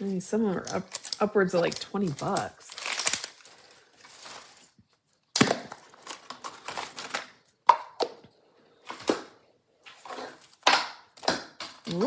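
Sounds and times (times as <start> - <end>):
plastic wrapper crinkling: 0.5 - 7.6.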